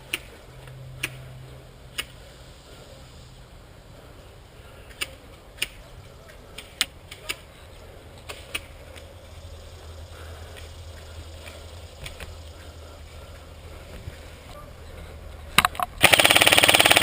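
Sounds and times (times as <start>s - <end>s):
low background noise: 0.0s - 17.0s
airsoft gun shots: 16.0s - 17.0s.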